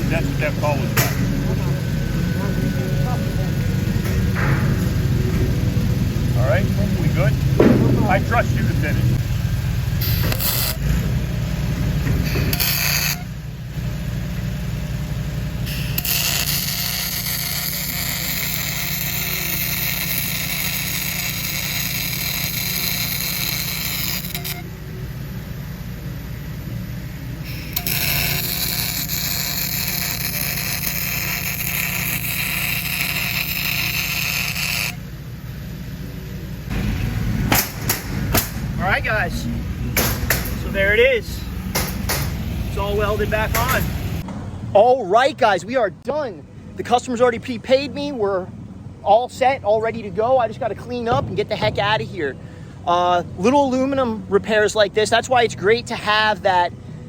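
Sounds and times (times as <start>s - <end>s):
welder generator engine drone: 0.0s - 57.0s
welding arc hissing and crackling: 6.2s - 13.4s, 14.3s - 24.6s, 27.4s - 35.1s, 40.2s - 44.2s.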